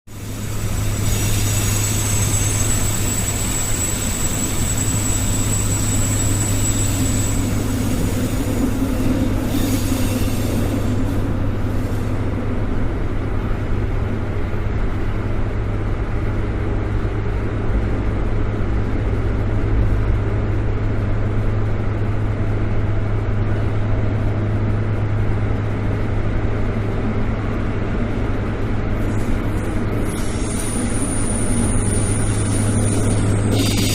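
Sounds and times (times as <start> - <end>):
subway train rumbling on rails: 0.1 - 33.9
high squeal: 0.3 - 12.2, 29.6 - 33.9.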